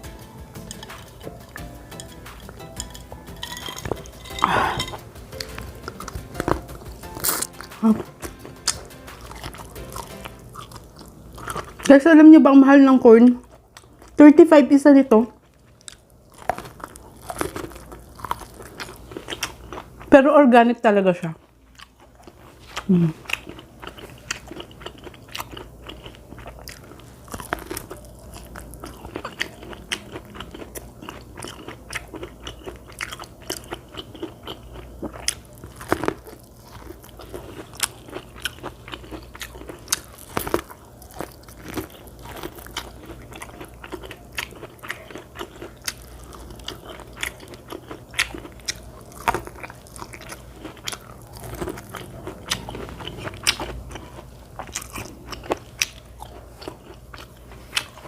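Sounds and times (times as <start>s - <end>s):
biting and chewing corn: 0.0s - 12.0s, 15.5s - 20.0s, 21.7s - 58.0s
steady low hum: 0.0s - 58.0s.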